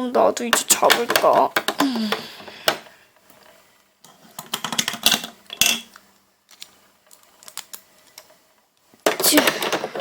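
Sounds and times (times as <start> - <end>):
plastic toys clicking and clattering: 0.2 - 2.9, 4.0 - 8.4, 9.0 - 10.0.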